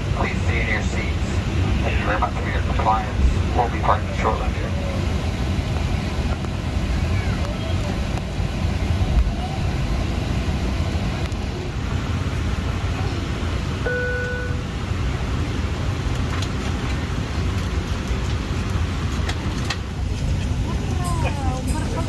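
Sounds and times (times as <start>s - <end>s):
low cabin rumble: 0.0s - 22.0s
short beep: 13.8s - 14.7s.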